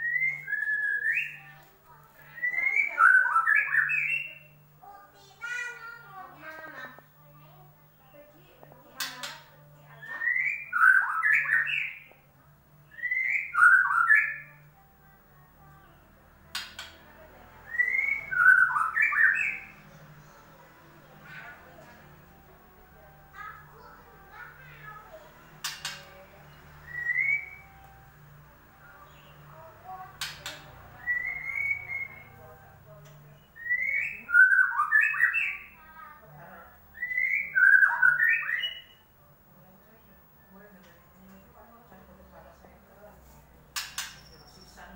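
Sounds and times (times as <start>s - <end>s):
bird song whistled phrases: 0.0s - 1.5s, 2.2s - 4.6s, 10.0s - 12.1s, 12.8s - 14.6s, 17.6s - 19.8s, 26.8s - 27.9s, 30.2s - 32.4s, 33.4s - 35.8s, 36.9s - 39.1s, 43.8s - 44.9s
faint low hum: 0.0s - 44.9s
sharp click: 43.8s - 44.4s.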